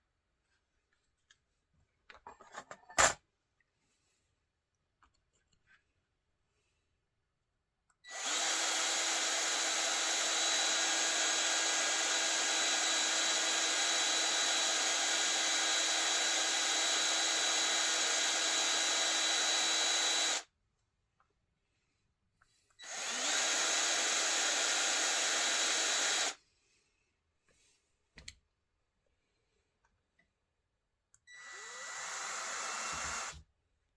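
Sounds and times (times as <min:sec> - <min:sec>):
handheld electric power tool running: 0:08.1 - 0:20.4, 0:22.8 - 0:26.4, 0:31.4 - 0:33.4.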